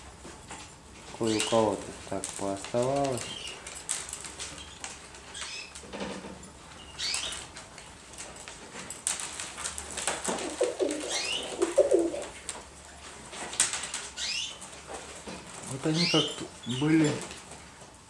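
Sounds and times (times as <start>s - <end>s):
pigeons cooing: 9.8s - 12.6s, 15.6s - 17.4s.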